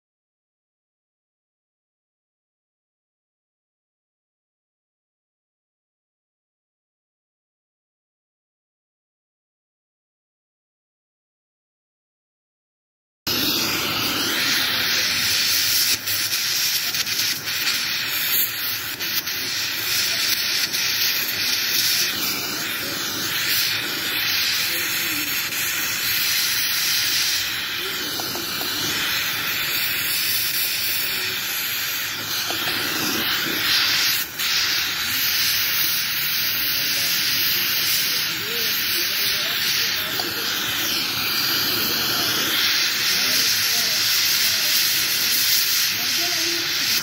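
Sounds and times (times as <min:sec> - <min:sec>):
welding arc hissing: 0:13.3 - 0:47.0.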